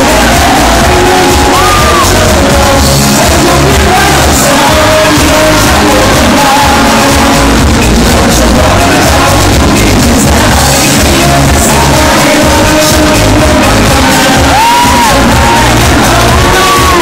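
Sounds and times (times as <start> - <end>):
people shouting and yelling: 0.0 - 6.7, 13.7 - 17.0
loud music: 0.0 - 17.0.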